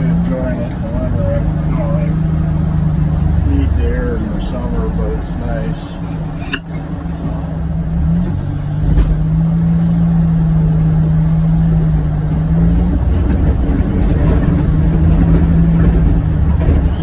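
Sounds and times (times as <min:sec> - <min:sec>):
utility vehicle engine drone: 0:00.0 - 0:17.0
high-pitched falling squeal: 0:07.9 - 0:09.2.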